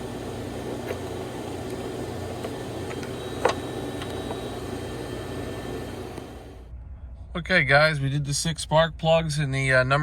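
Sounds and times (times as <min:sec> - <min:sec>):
engine idling: 0:00.0 - 0:06.8.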